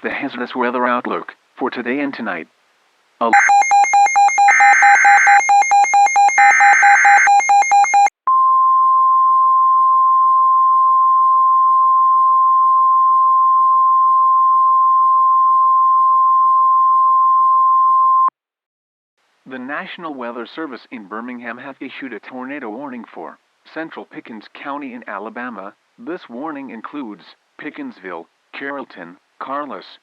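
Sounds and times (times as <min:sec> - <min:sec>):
rapid electronic beeping and warbling: 0:03.4 - 0:08.1
steady high alarm tone: 0:03.4 - 0:08.1.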